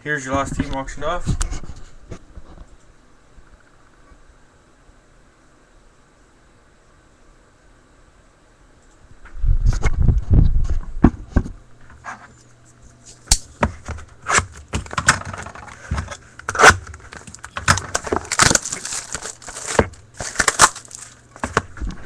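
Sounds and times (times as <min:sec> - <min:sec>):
plastic wrapping crinkling: 0:13.0 - 0:22.0
cardboard box torn open: 0:16.0 - 0:21.6.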